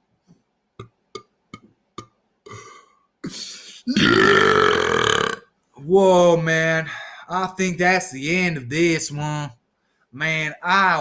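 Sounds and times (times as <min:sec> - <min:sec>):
loud long burp: 0:03.9 - 0:05.5.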